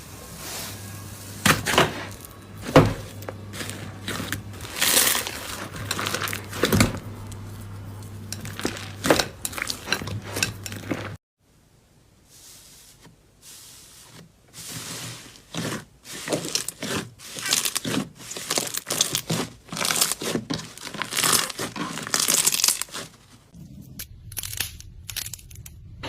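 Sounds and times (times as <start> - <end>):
slime crackling and popping by hand: 3.2 - 7.4, 16.2 - 23.2.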